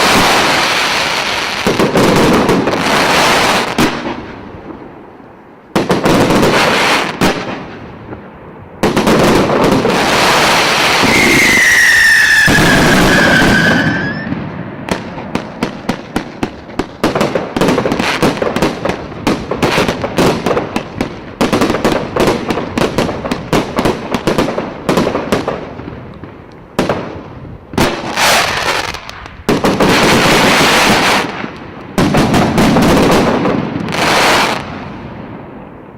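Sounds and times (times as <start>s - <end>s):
rapid firework crackling: 0.0s - 4.4s, 5.8s - 7.8s, 8.8s - 35.0s
fireworks launches and bursts: 0.0s - 5.0s, 5.6s - 35.9s
falling firework whistle: 10.0s - 15.0s.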